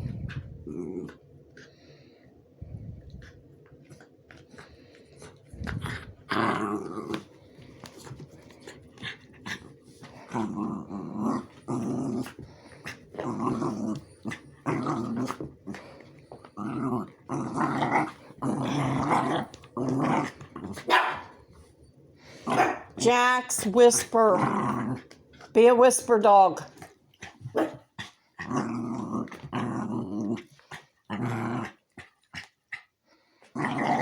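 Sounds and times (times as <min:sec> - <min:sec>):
dog growling and grumbling: 0:00.0 - 0:01.3, 0:03.0 - 0:07.4, 0:08.7 - 0:20.9, 0:23.8 - 0:25.6, 0:26.7 - 0:34.0.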